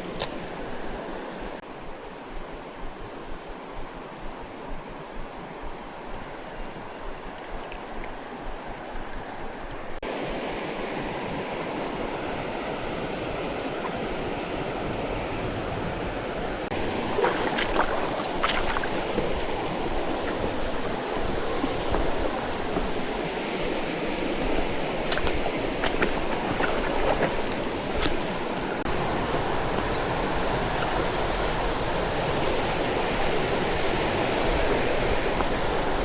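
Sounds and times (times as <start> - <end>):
creek water rushing: 0.0 - 36.0.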